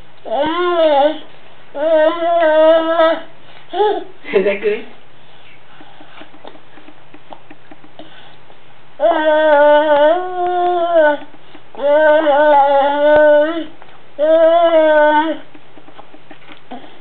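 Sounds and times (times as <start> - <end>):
person humming while eating: 9.0 - 17.0.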